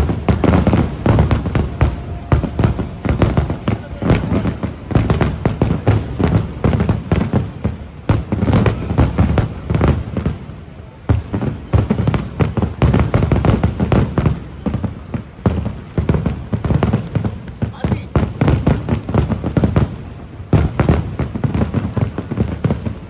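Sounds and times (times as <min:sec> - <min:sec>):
fireworks banging: 0:00.0 - 0:23.0.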